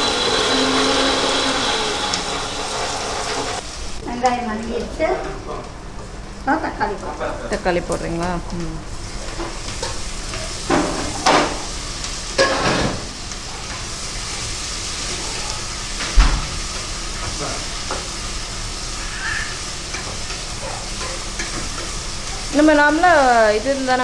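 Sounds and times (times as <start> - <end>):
onions sizzling in oil: 0.0 - 4.5, 7.8 - 24.0
thump: 16.2 - 16.6.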